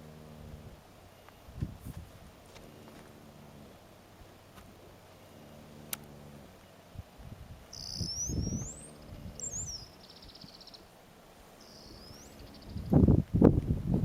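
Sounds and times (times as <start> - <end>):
horse snoring: 0.0 - 0.8, 2.4 - 4.0, 4.8 - 6.6, 8.6 - 9.9
small bird chirping: 7.7 - 10.9, 11.6 - 13.0.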